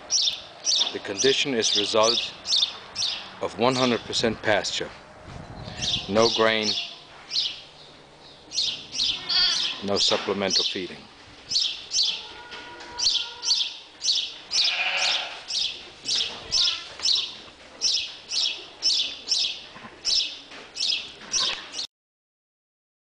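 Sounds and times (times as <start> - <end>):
small bird chirping: 0.1 - 3.3, 5.4 - 9.9, 11.5 - 12.3, 13.0 - 21.9
low bird call: 11.5 - 21.9.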